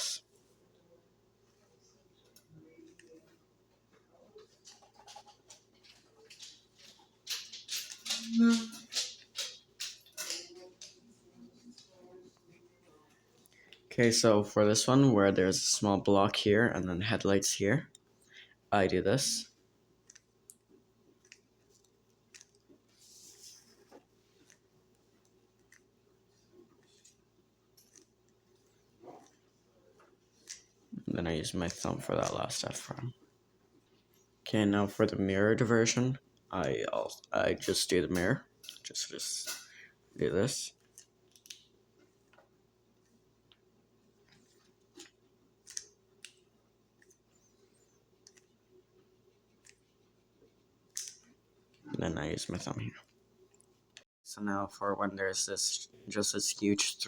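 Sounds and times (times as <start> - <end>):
soft rustle: 22.8 - 24.6.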